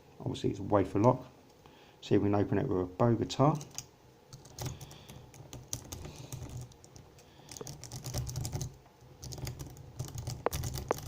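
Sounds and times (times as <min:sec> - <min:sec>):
lock pick clicking and scratching: 0:03.6 - 0:11.0.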